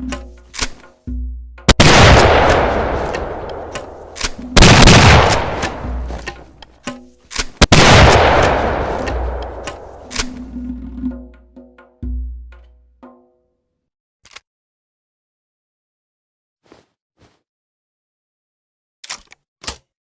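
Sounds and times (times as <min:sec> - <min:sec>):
shotgun blasts with echo: 0:01.7 - 0:06.3, 0:07.6 - 0:10.4.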